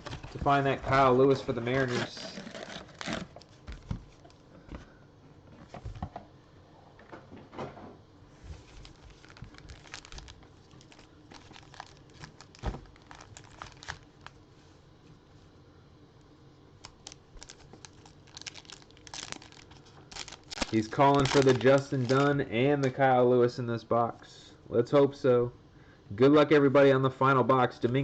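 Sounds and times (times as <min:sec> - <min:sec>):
plastic wrapping crinkling and tearing: 0:01.8 - 0:04.4, 0:08.6 - 0:14.4, 0:16.8 - 0:22.9
cardboard clicks and rustles: 0:08.6 - 0:14.4, 0:16.8 - 0:22.3.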